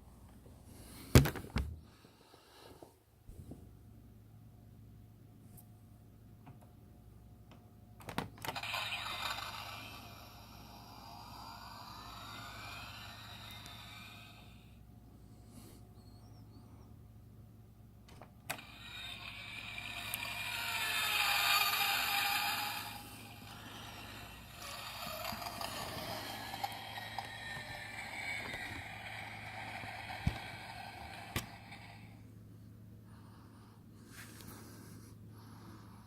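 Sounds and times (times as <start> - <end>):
toy clicks: 8.0 - 14.4, 18.5 - 32.0
toy car engine effects: 8.1 - 14.8, 18.5 - 32.2.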